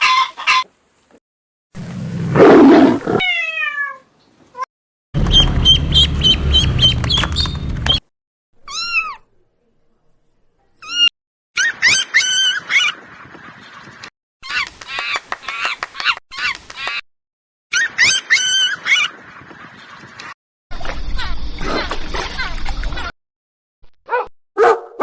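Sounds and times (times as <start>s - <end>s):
loud low rumble: 5.2s - 8.0s
rising and falling animal call: 5.2s - 8.0s.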